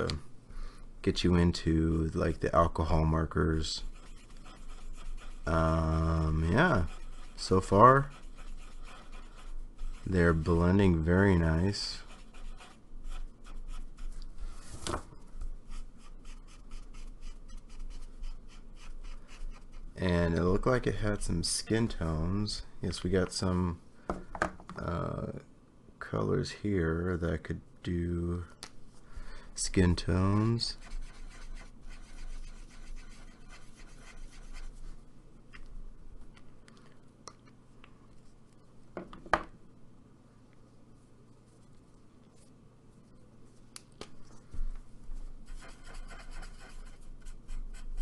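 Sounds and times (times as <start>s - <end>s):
marker scratching on paper: 3.8s - 5.5s, 6.4s - 10.7s, 12.0s - 14.2s, 30.7s - 34.9s, 45.4s - 48.0s.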